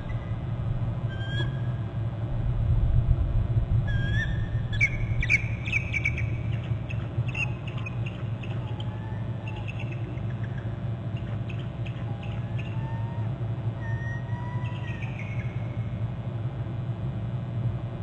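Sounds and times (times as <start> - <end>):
steady low rumble: 0.0 - 8.4
eagle calling: 1.1 - 1.8, 3.9 - 15.8.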